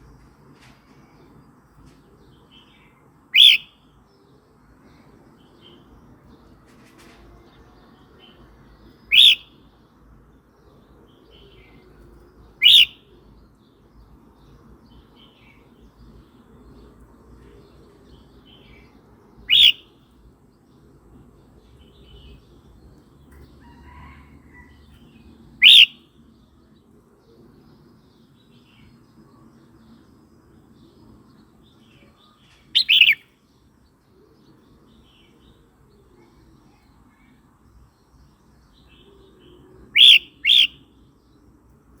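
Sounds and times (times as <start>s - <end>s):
bird calling in whistled notes: 3.4s - 3.7s, 9.1s - 9.5s, 12.6s - 13.1s, 19.5s - 19.9s, 25.6s - 26.0s, 32.8s - 33.2s, 39.9s - 40.8s.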